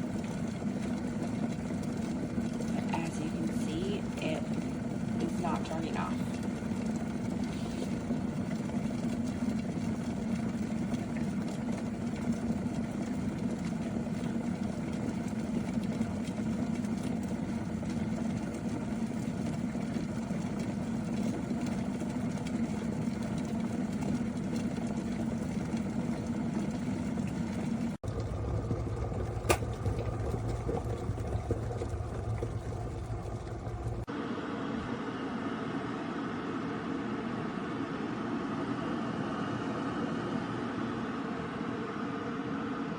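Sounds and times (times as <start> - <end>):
kettle water boiling: 0.0 - 34.2.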